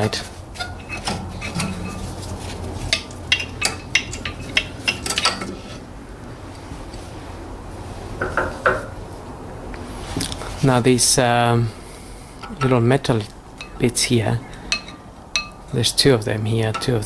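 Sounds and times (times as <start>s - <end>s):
screwdriver clinking and scraping metal: 0.0s - 2.2s, 2.8s - 5.8s.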